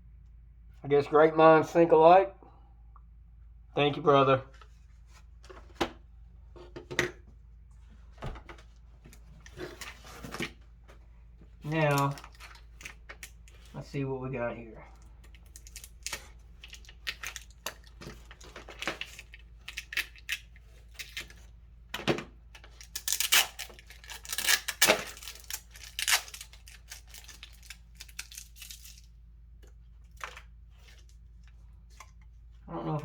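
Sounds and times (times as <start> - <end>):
packaging tearing and crinkling: 11.7 - 13.6, 15.4 - 21.5, 22.6 - 29.1.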